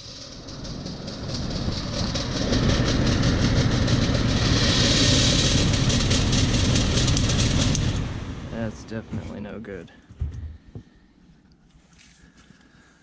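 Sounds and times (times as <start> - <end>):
blower motor with grinding rattle: 0.0 - 8.4.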